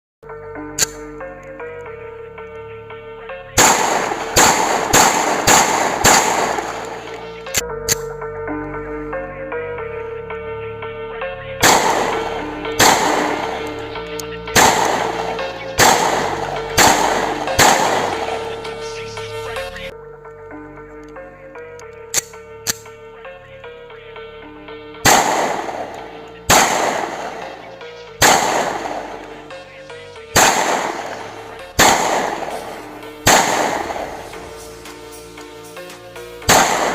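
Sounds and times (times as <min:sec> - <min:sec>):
background music: 0:00.2 - 0:36.9
pistol shots with echo: 0:03.6 - 0:07.3, 0:11.6 - 0:13.8, 0:14.5 - 0:18.8, 0:25.0 - 0:29.5, 0:30.4 - 0:34.5, 0:36.4 - 0:36.9.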